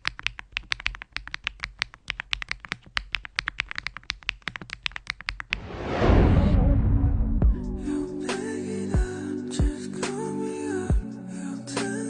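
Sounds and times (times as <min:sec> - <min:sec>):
mechanical keyboard typing: 0:00.0 - 0:05.6.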